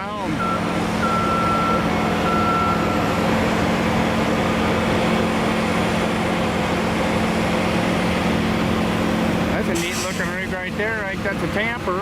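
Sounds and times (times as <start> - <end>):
diesel engine running: 0.0 - 12.0
backup alarm beeping: 0.4 - 3.1.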